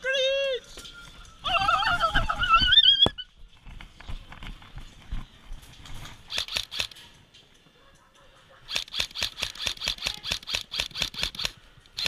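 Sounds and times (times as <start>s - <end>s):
sharp click: 6.3s - 7.0s, 8.7s - 11.6s.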